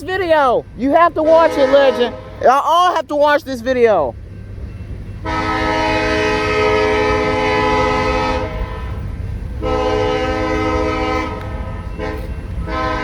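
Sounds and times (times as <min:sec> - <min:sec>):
train air horn blasts: 0:01.2 - 0:02.4, 0:05.2 - 0:09.0, 0:09.6 - 0:13.0.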